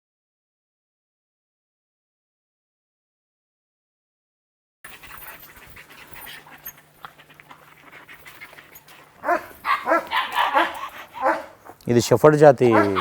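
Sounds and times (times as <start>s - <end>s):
dog panting: 4.9s - 11.9s, 12.6s - 13.0s
faint steady hum: 4.9s - 11.9s.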